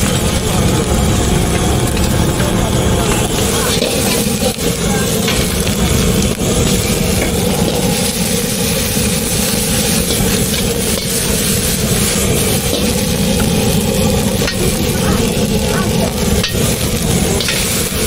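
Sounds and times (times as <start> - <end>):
gas burner roaring: 0.0 - 18.0.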